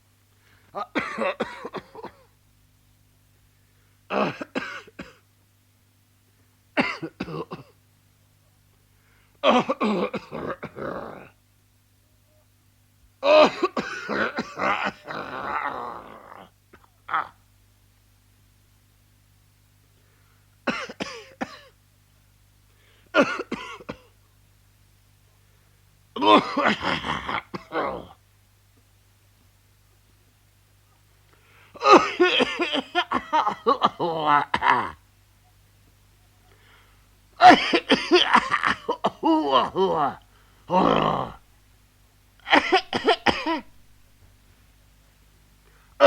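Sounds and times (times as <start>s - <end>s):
man coughing: 0.8s - 2.3s, 4.1s - 5.2s, 6.8s - 7.8s, 9.4s - 11.3s, 13.2s - 17.4s, 20.6s - 21.8s, 23.1s - 24.1s, 26.2s - 28.2s, 31.8s - 35.0s, 37.4s - 41.4s, 42.4s - 43.8s.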